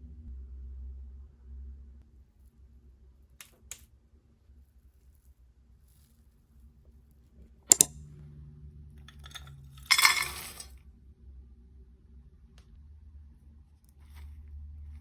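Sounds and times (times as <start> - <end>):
glass or dishes clinking: 9.2 - 10.7.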